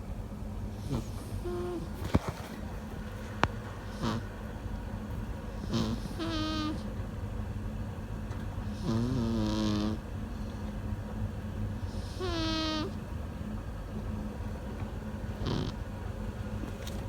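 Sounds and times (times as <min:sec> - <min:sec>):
steady low hum: 0:00.0 - 0:17.0
cat snoring: 0:00.8 - 0:02.1, 0:03.8 - 0:04.3, 0:05.6 - 0:06.9, 0:08.6 - 0:10.6, 0:11.8 - 0:13.0, 0:15.3 - 0:15.8.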